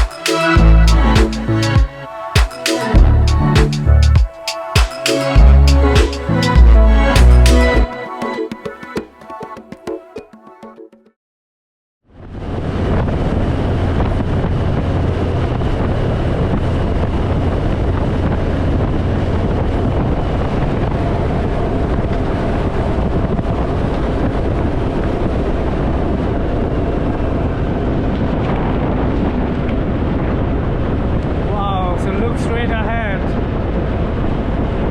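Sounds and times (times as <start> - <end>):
wind rushing over microphone: 12.2 - 34.9.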